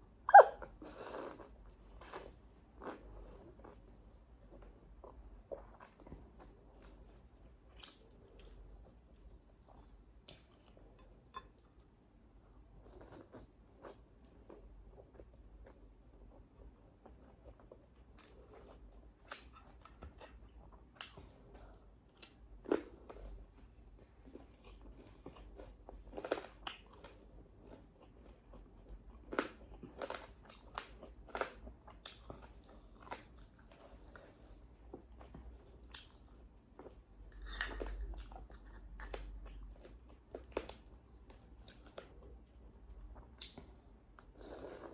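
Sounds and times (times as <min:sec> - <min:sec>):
person chewing crunchy food: 0:24.0 - 0:42.3.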